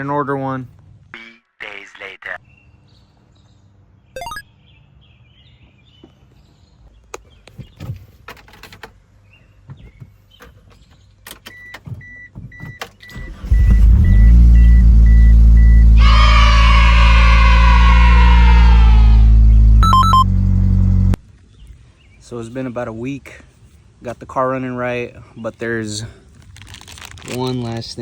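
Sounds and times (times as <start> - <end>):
car warning chime beeping: 11.5 - 16.0, 19.8 - 21.2
car engine cranking and idling: 13.0 - 21.2
loud high whine: 15.8 - 21.2.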